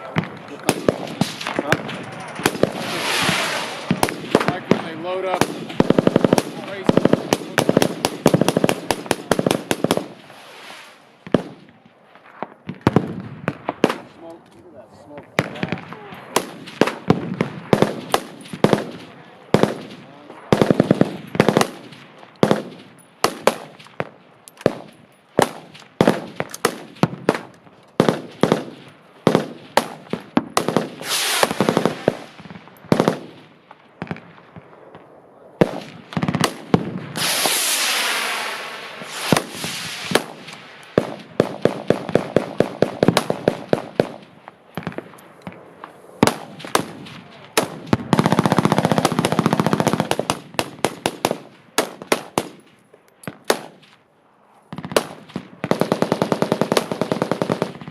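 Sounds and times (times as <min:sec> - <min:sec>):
machine guns firing: 0:00.0 - 0:10.2, 0:15.4 - 0:33.4, 0:39.1 - 0:45.0, 0:46.2 - 0:52.6, 0:54.9 - 0:57.9.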